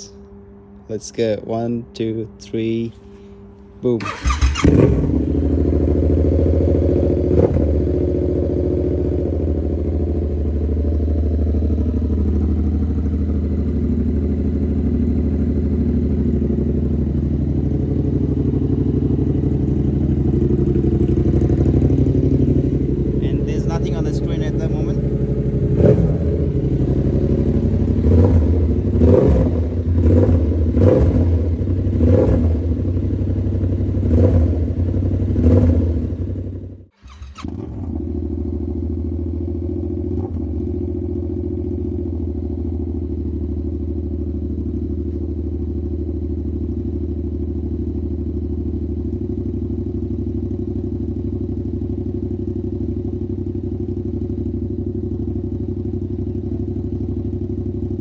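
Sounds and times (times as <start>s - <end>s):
motorcycle engine idling: 3.0s - 58.0s
motorcycle engine revving: 4.0s - 41.2s.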